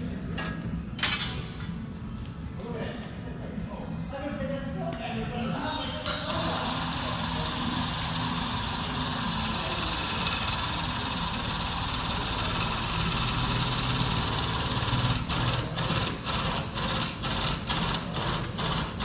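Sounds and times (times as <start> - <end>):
hydraulic pulling equipment running: 6.0 - 19.0.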